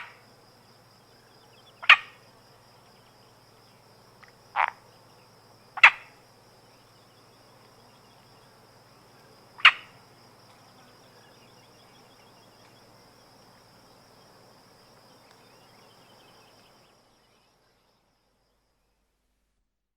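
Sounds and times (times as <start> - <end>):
frog croaking: 0.0 - 0.2, 1.5 - 2.3, 4.2 - 5.0, 5.7 - 6.2, 9.5 - 10.0.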